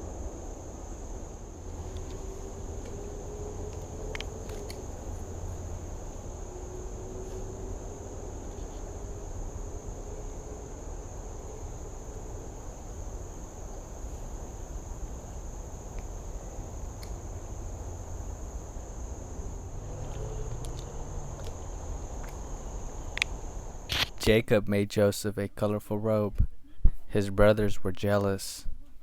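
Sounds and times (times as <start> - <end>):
insects droning: 0.0 - 25.1.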